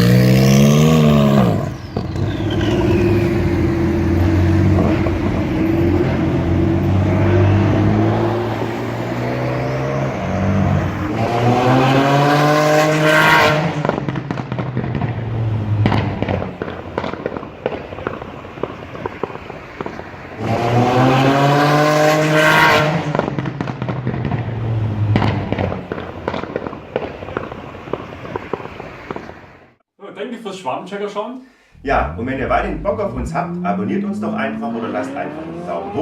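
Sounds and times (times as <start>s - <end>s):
exhaust crackles and pops: 0.0s - 6.4s, 13.4s - 21.3s, 22.8s - 29.7s
car engine revving: 0.0s - 14.0s, 20.4s - 23.4s, 31.8s - 36.0s.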